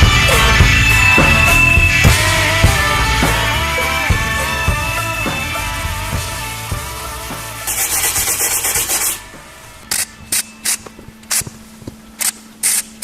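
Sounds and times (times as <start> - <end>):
grinding on steel: 0.0 - 9.8
rock music: 0.0 - 10.7
short bursts of hissing: 7.6 - 9.2.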